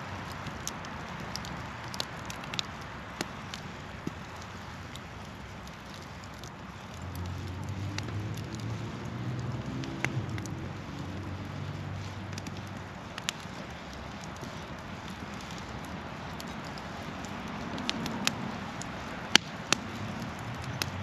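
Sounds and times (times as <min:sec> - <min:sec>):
campfire crackling and popping: 0:00.0 - 0:21.0
passing vehicle engine hum: 0:06.3 - 0:21.0.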